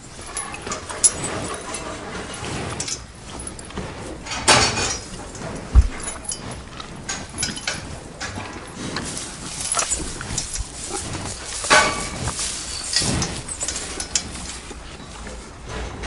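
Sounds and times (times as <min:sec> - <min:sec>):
cow snorting: 0:00.0 - 0:16.0
short low thump: 0:05.7 - 0:06.1.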